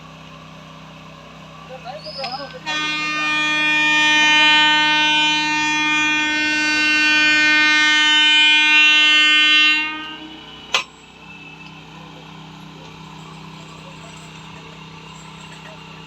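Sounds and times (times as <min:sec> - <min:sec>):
train horn blast: 0:02.5 - 0:10.6.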